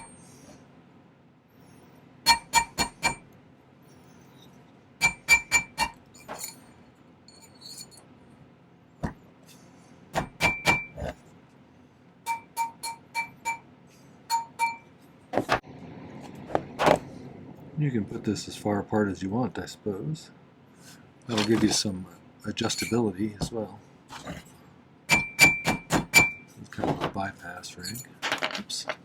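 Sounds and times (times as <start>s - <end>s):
hammer tapping metal ring: 2.3s - 3.2s, 5.0s - 6.5s, 10.2s - 10.9s, 12.3s - 13.6s, 14.3s - 14.9s, 25.1s - 26.4s.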